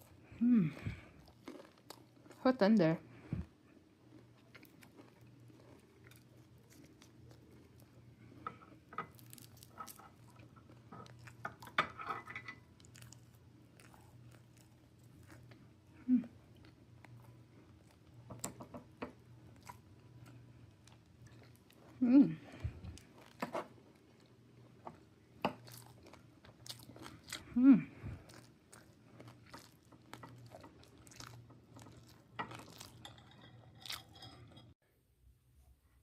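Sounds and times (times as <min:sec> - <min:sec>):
person chewing: 0:00.0 - 0:02.4, 0:03.4 - 0:11.8, 0:12.7 - 0:18.6, 0:19.2 - 0:34.4
faint low hum: 0:00.0 - 0:36.0
person humming mm: 0:00.4 - 0:01.0, 0:16.0 - 0:16.4, 0:22.0 - 0:22.6, 0:27.5 - 0:28.2.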